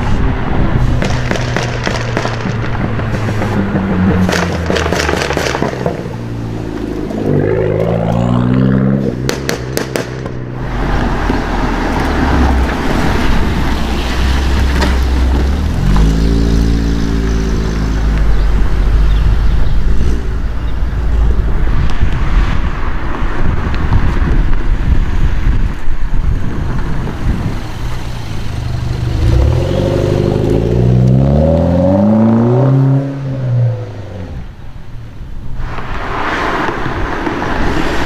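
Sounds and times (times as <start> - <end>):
car exhaust revving: 0.0 - 22.4, 27.0 - 34.6
exhaust crackles and pops: 0.8 - 28.1.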